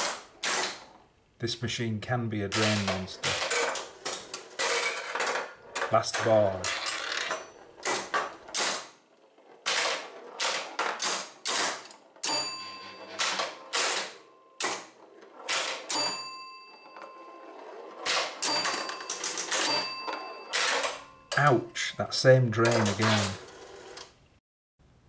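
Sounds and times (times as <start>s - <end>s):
pinball flippers clacking: 2.5s - 21.6s, 22.4s - 24.1s
ball striking targets and bumpers: 2.6s - 21.6s
ringing scoring tones: 12.1s - 24.0s.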